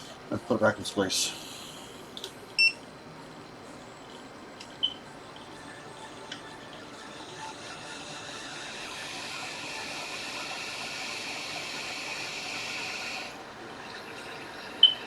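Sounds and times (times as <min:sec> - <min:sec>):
hot air station hissing: 0:01.0 - 0:02.2, 0:06.1 - 0:15.0.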